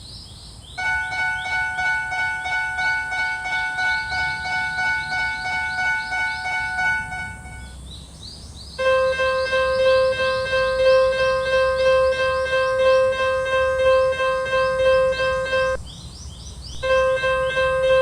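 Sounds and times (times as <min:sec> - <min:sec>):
level crossing warning tone: 0:00.8 - 0:07.8, 0:08.8 - 0:15.8, 0:16.8 - 0:18.0.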